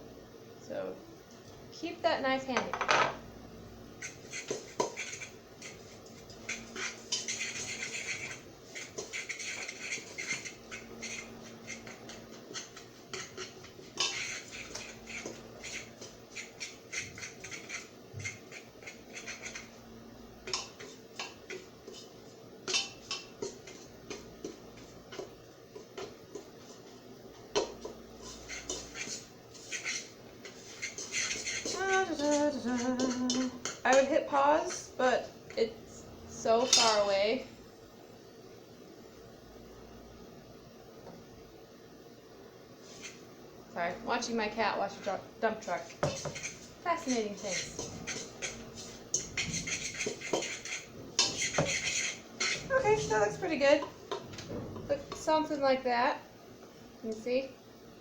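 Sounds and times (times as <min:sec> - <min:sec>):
metal fork scraping a bowl: 0:04.0 - 0:19.8, 0:20.4 - 0:25.3, 0:28.2 - 0:34.9, 0:36.6 - 0:37.1, 0:45.7 - 0:54.2.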